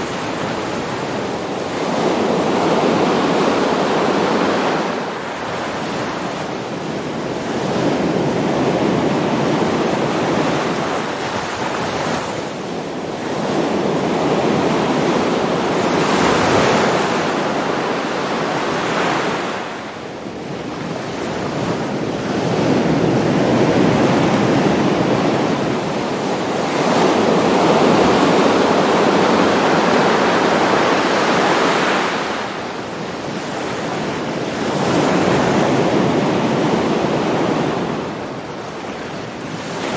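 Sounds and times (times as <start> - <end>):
ocean waves breaking: 0.0 - 39.9.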